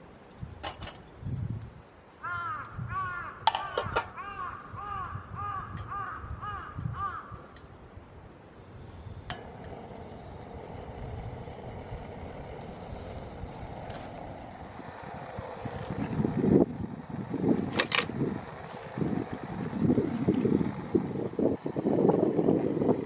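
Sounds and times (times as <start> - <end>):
steady outdoor hiss: 0.0 - 23.0
crow cawing: 2.2 - 7.5.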